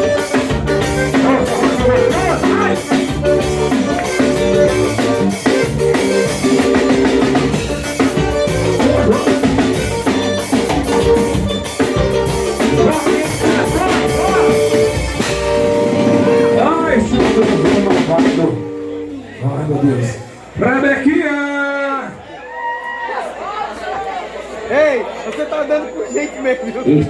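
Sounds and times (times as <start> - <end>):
drum kit beat: 0.0 - 19.3
band playing instrumental: 0.0 - 21.1.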